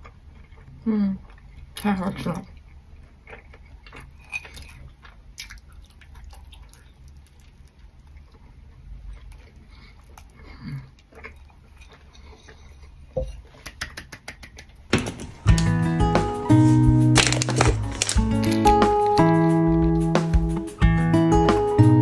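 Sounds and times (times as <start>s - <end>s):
person biting and chewing food: 0.0s - 1.8s, 2.5s - 14.8s, 17.1s - 19.4s.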